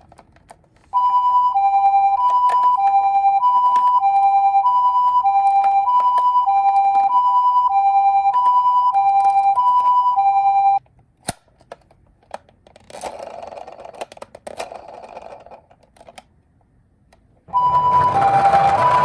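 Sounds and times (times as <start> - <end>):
toy two-tone siren: 1.0 - 10.8, 17.5 - 19.0.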